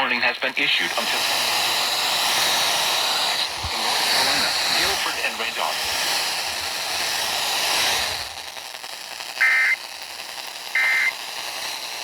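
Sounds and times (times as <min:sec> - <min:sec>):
radio hiss: 0:00.0 - 0:12.0
electronic data bursts: 0:02.9 - 0:06.2, 0:09.1 - 0:11.9.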